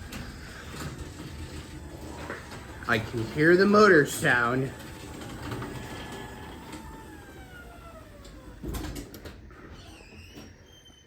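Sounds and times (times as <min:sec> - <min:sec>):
garage door motor whine: 0:00.0 - 0:11.0
garage door thud: 0:04.7 - 0:10.6.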